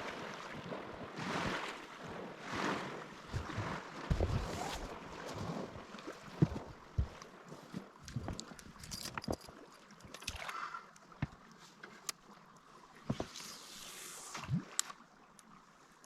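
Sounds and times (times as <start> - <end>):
wind: 0.0 - 16.0
lapping water: 10.0 - 11.4.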